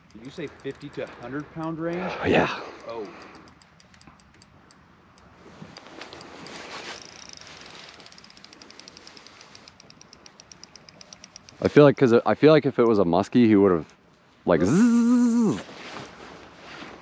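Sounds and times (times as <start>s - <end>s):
spinning reel clicking: 0.0s - 2.0s, 2.8s - 4.6s, 5.2s - 11.8s.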